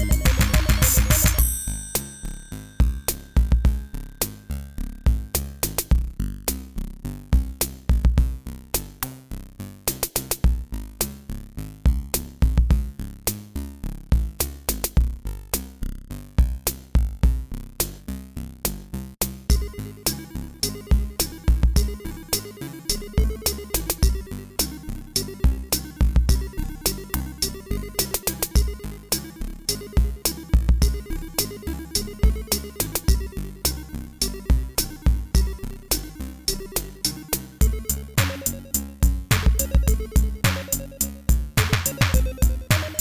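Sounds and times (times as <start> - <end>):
electronic music with drum machine: 0.0 - 1.8, 2.8 - 6.2, 19.5 - 43.0.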